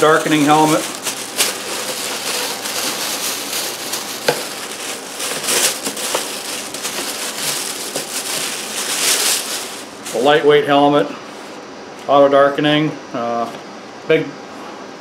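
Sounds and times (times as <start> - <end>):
packaging crinkling and rustling: 0.0 - 10.6.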